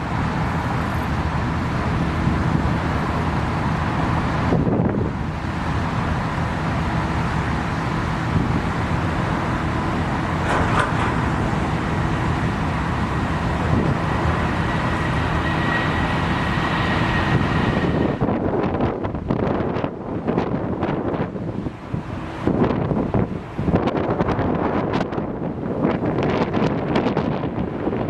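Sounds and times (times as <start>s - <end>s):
jet engines roaring: 0.0s - 28.0s
thin high whine: 10.3s - 18.8s.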